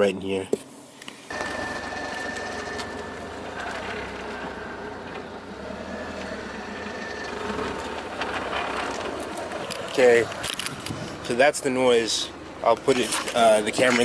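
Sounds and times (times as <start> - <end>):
steady high tone: 1.3 - 9.7
car running: 1.3 - 14.0
drivetrain grinding noise: 1.3 - 14.0.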